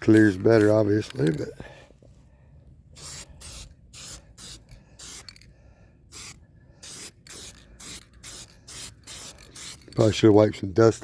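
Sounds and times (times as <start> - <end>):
spray paint can hissing: 3.0 - 5.4, 6.1 - 10.2.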